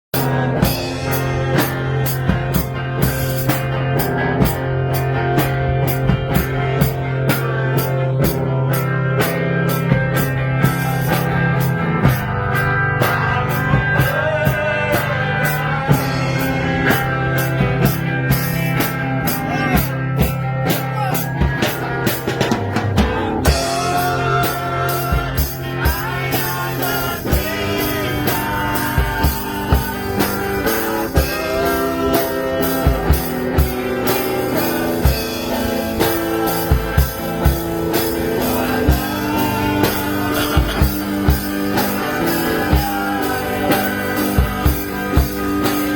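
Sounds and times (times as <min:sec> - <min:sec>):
drums: 0:00.0 - 0:45.9
guitar: 0:00.0 - 0:45.9
live band music: 0:00.2 - 0:45.9
person singing: 0:19.2 - 0:21.7, 0:23.0 - 0:45.9.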